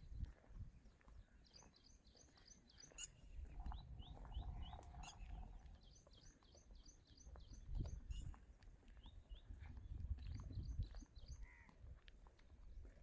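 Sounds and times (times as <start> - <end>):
faint bird chirping: 0.9 - 11.7
low rumble: 3.5 - 5.8.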